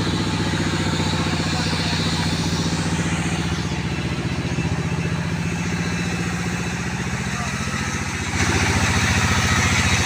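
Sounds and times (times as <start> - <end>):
truck engine idling: 0.0 - 10.0.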